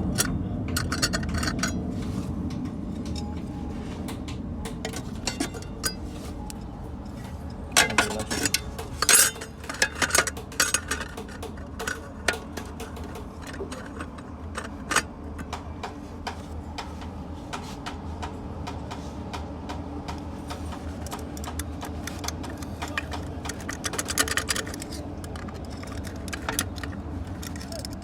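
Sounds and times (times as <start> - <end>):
metal parts clinking: 0.0 - 2.2, 4.8 - 15.5, 21.0 - 28.0
steady low hum: 0.0 - 27.8.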